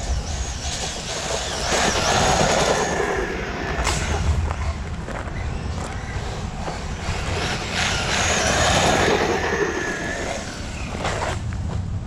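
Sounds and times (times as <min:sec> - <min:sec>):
toy truck motor whine: 0:00.0 - 0:03.8, 0:05.3 - 0:11.2
steady low rumble: 0:00.0 - 0:12.0.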